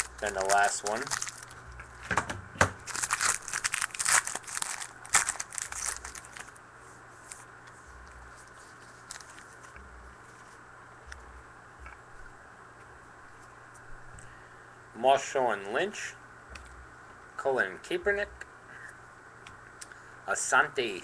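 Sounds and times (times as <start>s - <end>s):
plastic wrapper tearing and crinkling: 0.0s - 2.1s, 2.8s - 6.6s, 8.4s - 10.4s.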